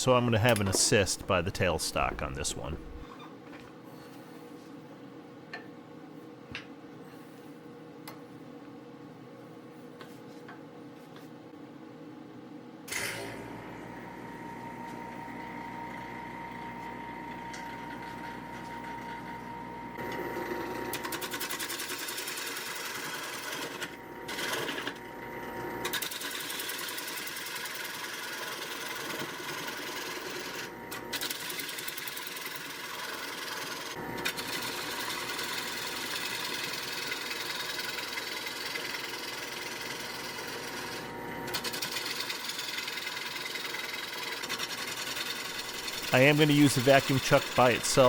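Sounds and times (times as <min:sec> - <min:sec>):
lathe tool cutting wood: 0:27.4 - 0:48.0.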